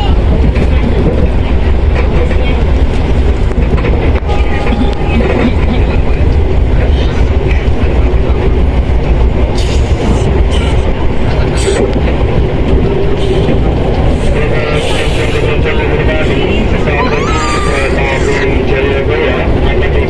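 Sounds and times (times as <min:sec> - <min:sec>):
train wheels rumbling: 0:00.0 - 0:20.0.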